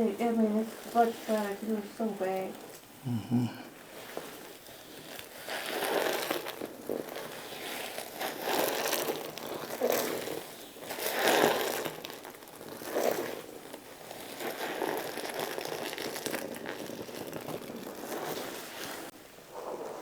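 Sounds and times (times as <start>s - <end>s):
hands rubbing fabric and skin: 3.9s - 13.4s, 14.2s - 20.0s.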